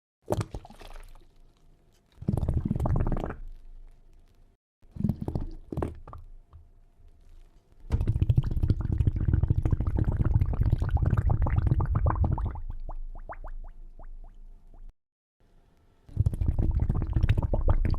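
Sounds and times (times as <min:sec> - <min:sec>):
water bubbling: 0:08.1 - 0:14.9, 0:16.1 - 0:17.9.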